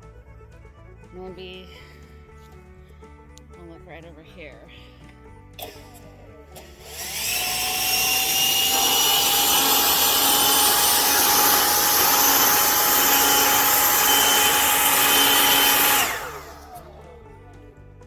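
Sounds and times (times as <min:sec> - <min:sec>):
leaf blower running: 0:05.6 - 0:17.2.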